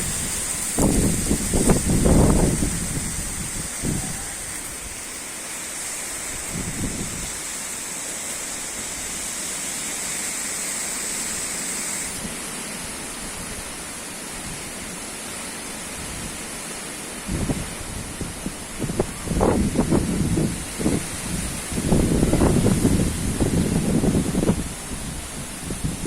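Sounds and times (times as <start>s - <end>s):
strong wind blowing: 0.0s - 5.0s, 6.3s - 7.4s, 17.2s - 26.0s
wind buffeting microphone: 0.0s - 5.0s, 6.3s - 7.4s, 17.3s - 26.0s.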